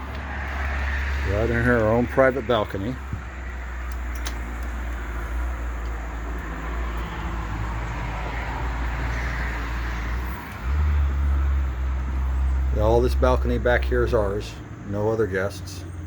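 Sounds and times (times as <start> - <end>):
low traffic rumble: 0.0 - 16.0
vehicle passing: 0.0 - 16.0.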